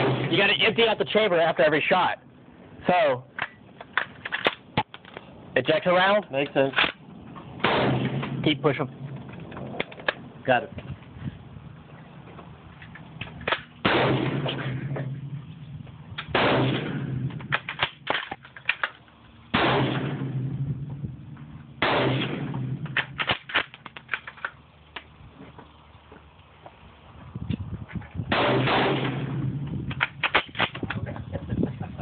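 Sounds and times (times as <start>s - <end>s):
gunshots echoing: 0.0s - 0.9s, 7.6s - 9.1s, 13.5s - 15.3s, 16.3s - 18.2s, 19.5s - 20.7s, 21.8s - 23.7s, 28.3s - 30.5s
sharp cracks and clicks: 3.3s - 5.2s, 16.2s - 20.2s, 21.8s - 25.1s, 28.4s - 31.0s.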